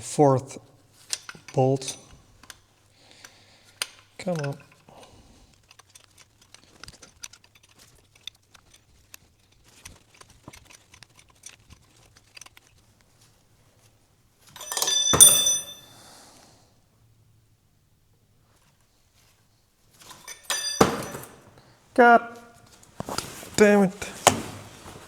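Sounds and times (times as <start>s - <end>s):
loud metal clang: 14.6s - 15.9s, 20.3s - 21.5s.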